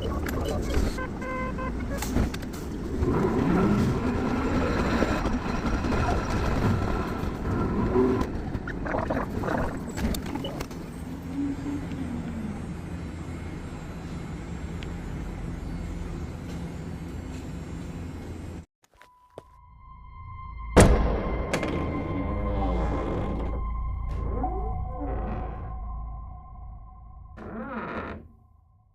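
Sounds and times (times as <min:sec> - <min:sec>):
streetcar rumbling: 0:00.0 - 0:10.1, 0:10.7 - 0:18.6.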